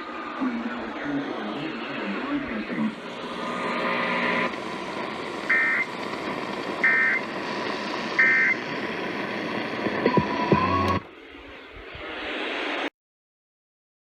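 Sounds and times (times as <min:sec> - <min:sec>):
crackle of noise: 0:00.0 - 0:12.9
radio static: 0:00.0 - 0:12.9.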